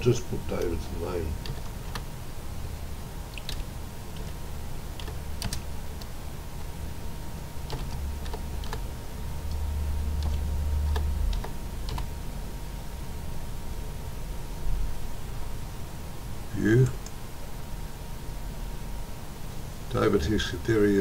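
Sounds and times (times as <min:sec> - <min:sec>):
steady low hum: 0:00.0 - 0:21.0
computer keyboard typing: 0:01.4 - 0:02.1, 0:03.3 - 0:04.4, 0:05.0 - 0:06.1, 0:07.6 - 0:08.8, 0:10.2 - 0:12.1.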